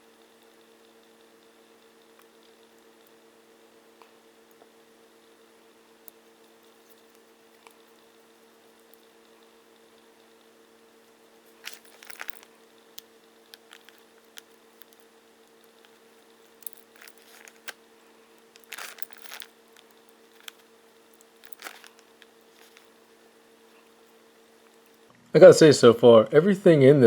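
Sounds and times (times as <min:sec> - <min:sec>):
steady low hum: 0:00.0 - 0:27.0.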